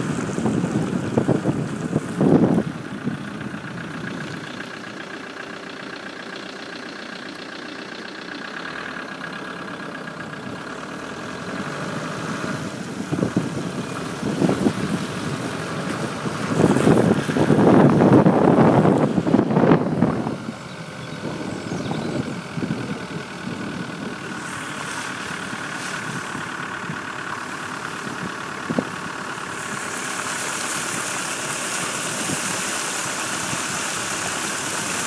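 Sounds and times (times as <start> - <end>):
car engine running: 0.0 - 35.0
water splashing and spraying: 10.6 - 19.3, 24.3 - 35.0.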